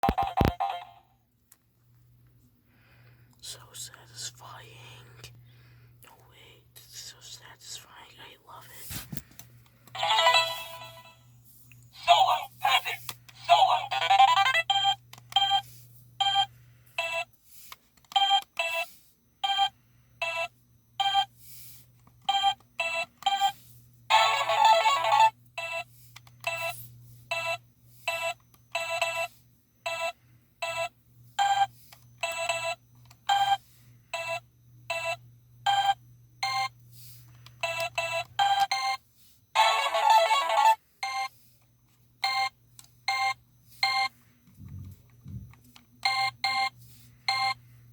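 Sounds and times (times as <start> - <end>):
handheld game toy beeps: 0.0 - 1.0, 10.0 - 11.2, 13.4 - 17.3, 18.1 - 21.4, 22.2 - 36.7, 37.6 - 41.4, 42.2 - 44.2, 46.0 - 47.6
faint low hum: 0.0 - 47.9.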